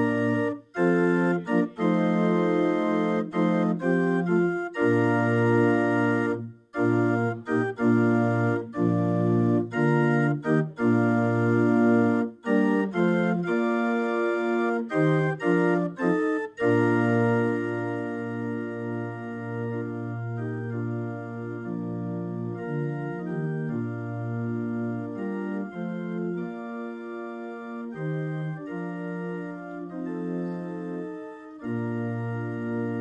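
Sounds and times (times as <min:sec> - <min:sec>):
organ playing sustained chords: 0:00.0 - 0:33.0.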